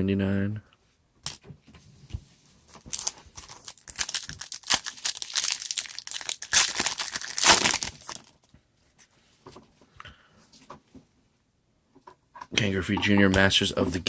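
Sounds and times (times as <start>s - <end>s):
foil wrapper crinkling and tearing: 2.8s - 8.4s.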